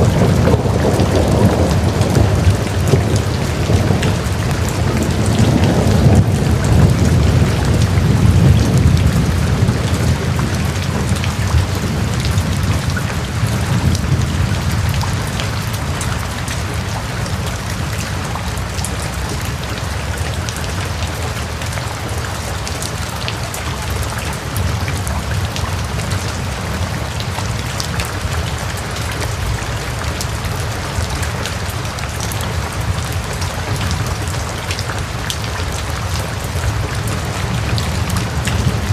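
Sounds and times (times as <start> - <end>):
heavy rain falling: 0.0 - 38.9
low rumble of thunder: 0.0 - 38.9.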